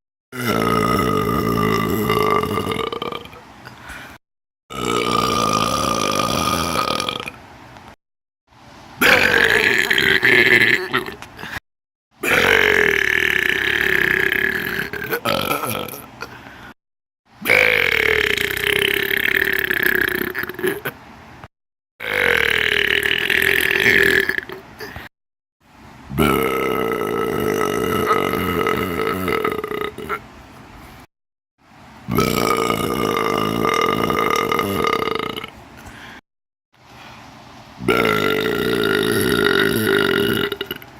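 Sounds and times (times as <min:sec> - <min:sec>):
long human burps: 0:00.3 - 0:03.8, 0:04.7 - 0:07.4, 0:09.0 - 0:11.6, 0:12.2 - 0:16.5, 0:17.4 - 0:21.0, 0:22.0 - 0:25.1, 0:26.2 - 0:30.2, 0:32.1 - 0:35.6, 0:37.9 - 0:40.9.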